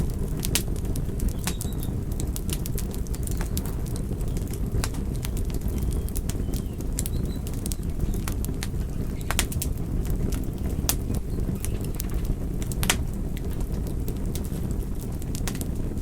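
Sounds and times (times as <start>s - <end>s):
low rumble of flames: 0.0s - 16.0s
wood crackling and popping: 0.0s - 16.0s
faint high whistles: 1.3s - 1.9s, 5.8s - 7.9s.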